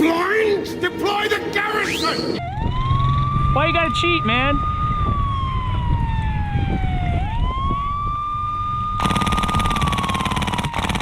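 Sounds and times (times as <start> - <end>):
siren wailing: 1.7 - 11.0
rapid airsoft gunfire: 9.0 - 11.0.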